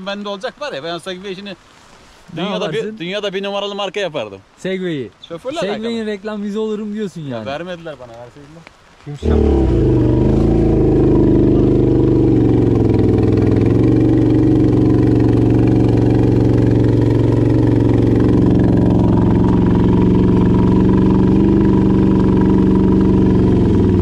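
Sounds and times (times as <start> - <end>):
atv engine running: 9.2 - 24.0.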